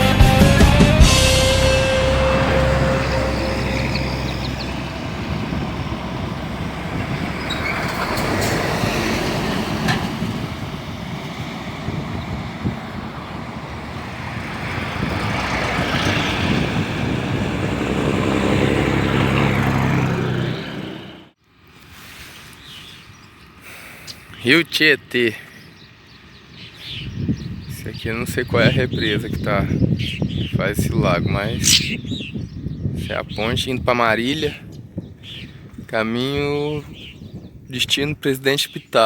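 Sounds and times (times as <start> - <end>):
wind rush: 1.0 - 21.0, 28.6 - 38.2.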